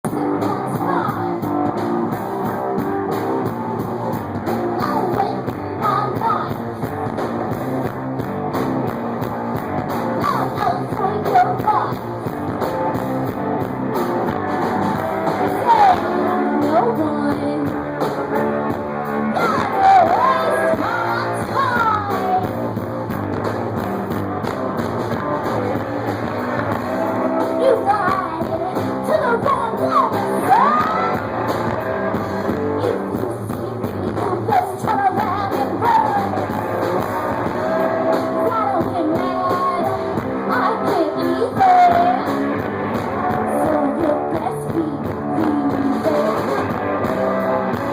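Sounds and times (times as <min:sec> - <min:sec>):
drums: 0:00.0 - 0:47.9
electric guitar: 0:00.0 - 0:47.9
person singing: 0:15.4 - 0:17.9, 0:19.2 - 0:22.7, 0:26.8 - 0:36.7, 0:37.4 - 0:42.5, 0:43.2 - 0:46.6.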